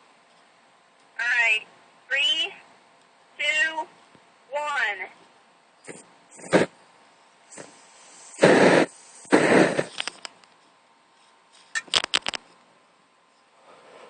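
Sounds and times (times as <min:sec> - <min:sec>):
aerosol spray igniting whoosh: 0:05.9 - 0:06.7, 0:07.5 - 0:10.1
sharp clicks: 0:11.8 - 0:12.4.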